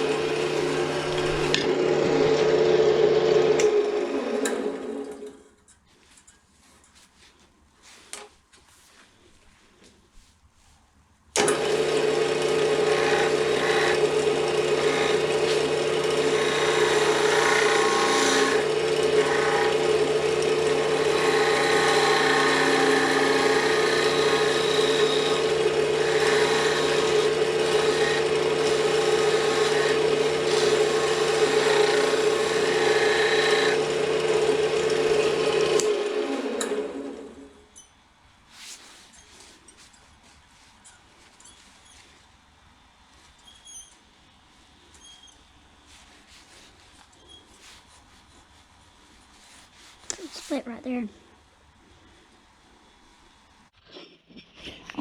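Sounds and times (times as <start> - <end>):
turning tool scraping wood: 0.0 - 5.0, 11.4 - 37.3
wood lathe motor hum: 0.0 - 5.4, 11.4 - 37.6.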